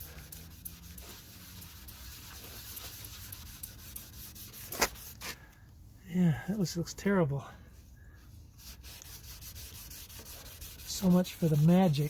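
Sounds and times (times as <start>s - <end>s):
cloth rubbing on plastic lens: 0.3s - 5.4s, 8.5s - 12.0s.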